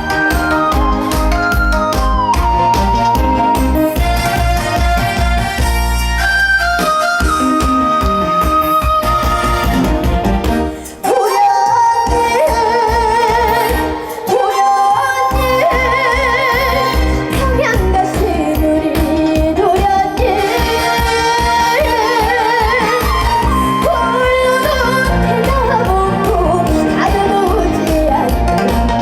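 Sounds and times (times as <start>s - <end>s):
backing track with steady beat: 0.0s - 29.0s
girl singing with vibrato: 11.0s - 28.8s.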